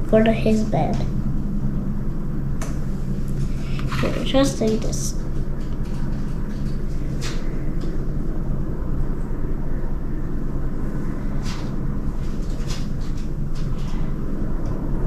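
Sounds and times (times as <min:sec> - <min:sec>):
low hum and rumble: 0:00.0 - 0:15.0.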